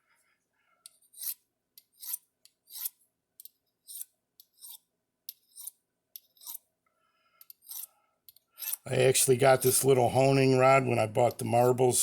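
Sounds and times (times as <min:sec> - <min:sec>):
knife blade scraping honing rod: 0:00.9 - 0:06.7, 0:07.4 - 0:08.9.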